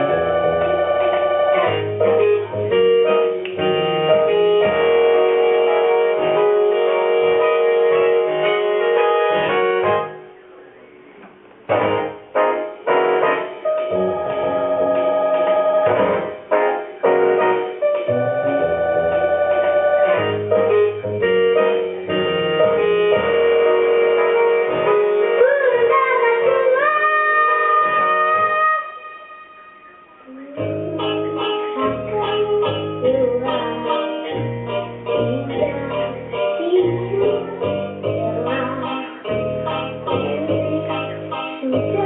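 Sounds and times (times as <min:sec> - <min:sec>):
repeating bass accompaniment: 0:00.0 - 0:10.2, 0:13.8 - 0:24.9
electronic keyboard melody: 0:00.0 - 0:42.0.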